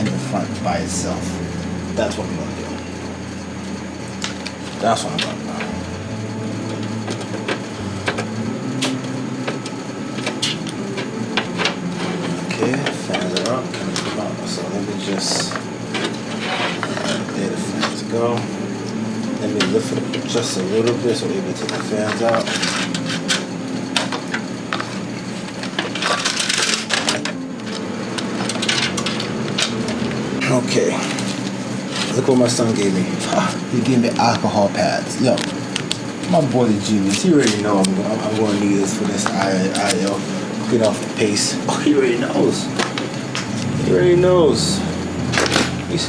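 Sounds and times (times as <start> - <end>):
low hum: 0.0 - 20.8, 42.6 - 46.0
clicks and knocks of computer parts: 25.6 - 30.0.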